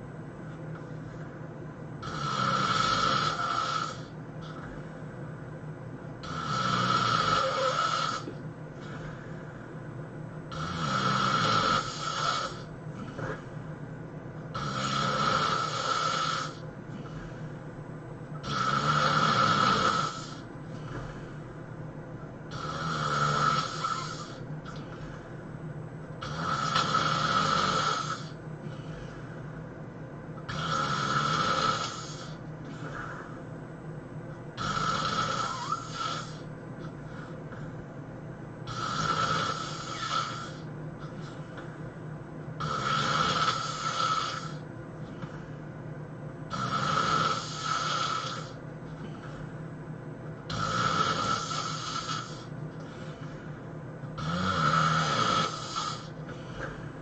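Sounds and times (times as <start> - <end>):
person snoring loudly: 2.0 - 4.1, 6.2 - 8.3, 10.5 - 13.4, 14.5 - 16.6, 18.4 - 20.4, 22.5 - 24.8, 26.2 - 28.4, 30.5 - 33.3, 34.6 - 36.5, 38.7 - 40.7, 42.6 - 44.6, 46.5 - 48.6, 50.5 - 52.5, 54.2 - 56.7.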